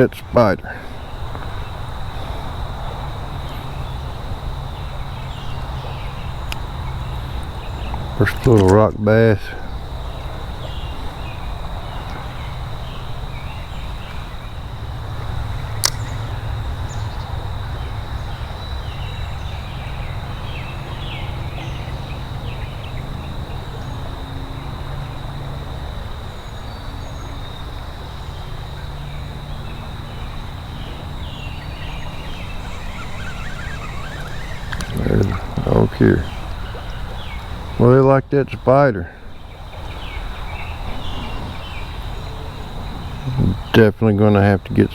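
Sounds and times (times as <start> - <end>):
sharp click: 15.8 - 16.1
bird chirps: 30.8 - 37.6.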